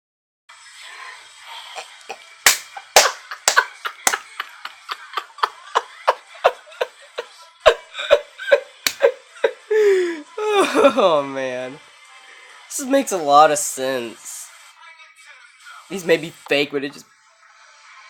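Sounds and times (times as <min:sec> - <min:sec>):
sharp slap-like hits: 0:02.5 - 0:03.6.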